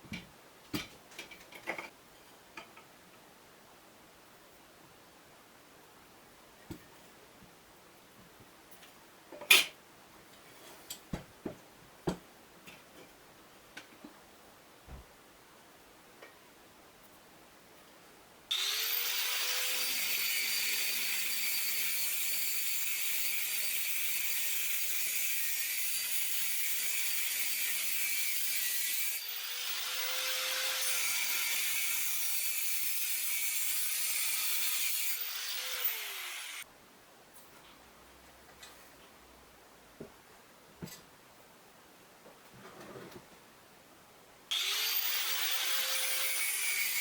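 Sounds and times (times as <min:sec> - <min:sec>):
angle grinder grinding: 0:18.5 - 0:23.8, 0:24.7 - 0:36.6, 0:44.5 - 0:47.0.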